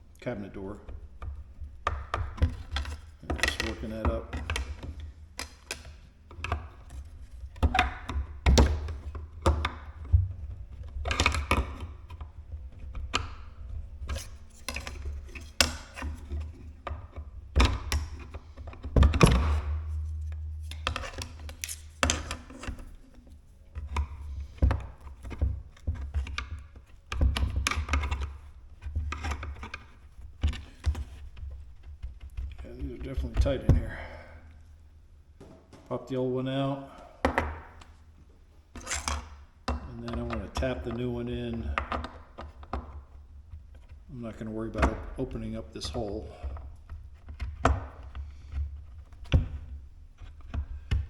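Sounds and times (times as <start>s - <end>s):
hinge knocking and clicking: 0.9s - 34.3s.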